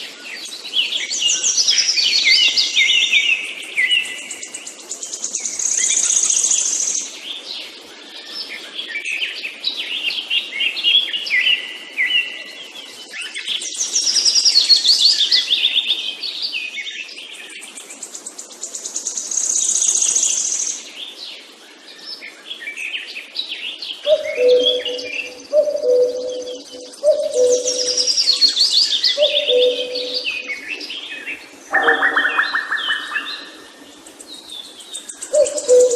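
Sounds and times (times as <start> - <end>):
songbirds singing: 0.0 - 35.9
bird high trills and falling notes: 31.7 - 33.6.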